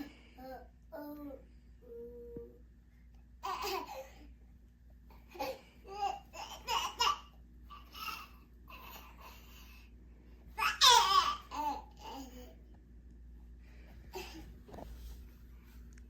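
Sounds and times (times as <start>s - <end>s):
baby babbling and laughing: 5.2s - 9.6s, 10.6s - 12.6s.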